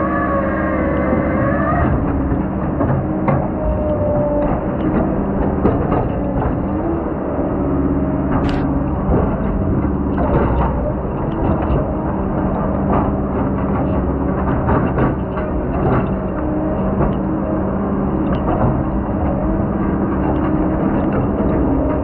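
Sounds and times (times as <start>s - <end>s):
heavy diesel machinery running: 0.0s - 22.0s
knocks and clanks: 8.3s - 17.6s.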